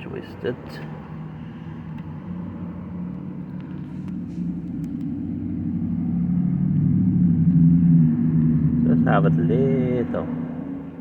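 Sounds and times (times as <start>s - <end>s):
vehicle engine hum: 0.0s - 11.0s.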